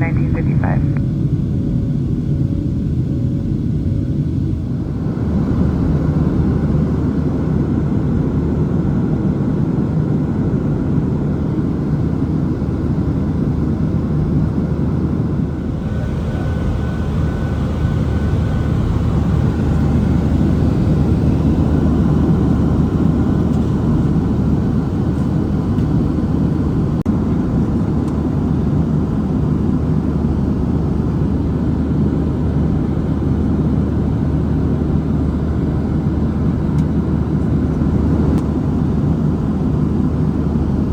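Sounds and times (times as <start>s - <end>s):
jet cabin engine rumble: 0.0s - 40.9s.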